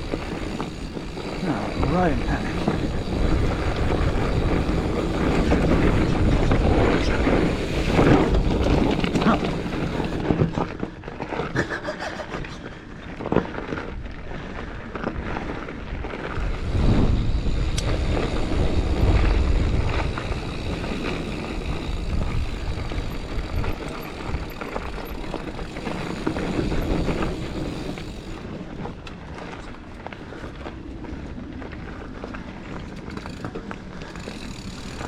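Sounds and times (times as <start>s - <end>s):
wind buffeting microphone: 0.0s - 11.1s, 12.6s - 35.0s
bike rattling over bumps: 0.0s - 35.0s
bike tyres rolling on dirt: 0.0s - 35.0s.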